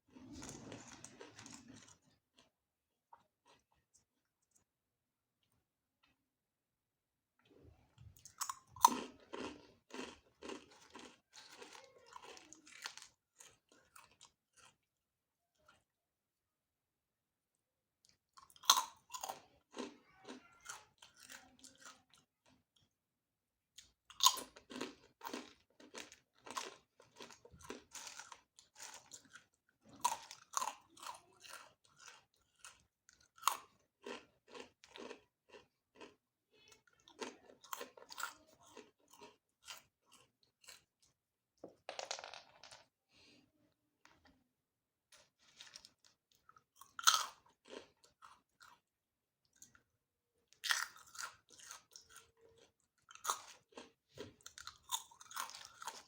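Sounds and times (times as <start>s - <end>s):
crunchy chewing of food: 0.1s - 4.7s, 7.4s - 14.9s, 18.0s - 23.0s, 23.8s - 41.2s, 45.1s - 49.9s, 50.5s - 56.0s.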